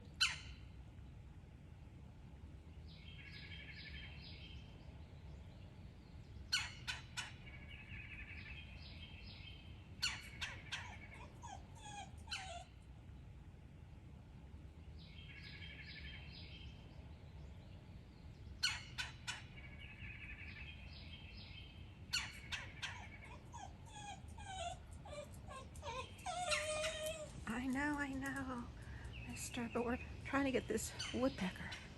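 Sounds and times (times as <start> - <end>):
woodpecker calling: 0.0 - 0.7, 6.5 - 12.6, 18.6 - 31.9.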